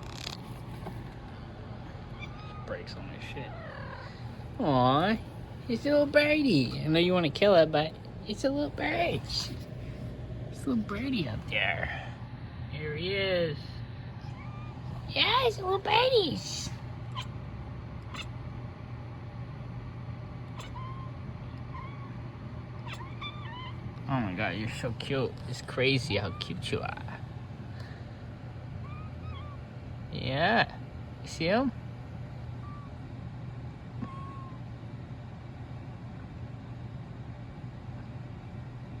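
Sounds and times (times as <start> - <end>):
low mechanical rumble: 0.0 - 39.0
cat chirping: 1.8 - 4.6, 14.2 - 15.4, 17.1 - 17.4, 18.1 - 18.4, 20.4 - 24.0, 26.0 - 27.2, 28.7 - 29.7, 32.5 - 33.0, 33.9 - 34.7.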